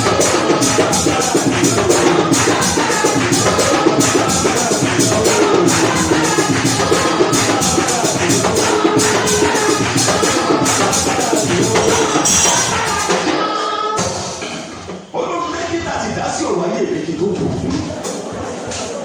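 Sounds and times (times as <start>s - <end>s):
tambourine beat: 0.0s - 14.6s
voices singing: 0.0s - 19.0s.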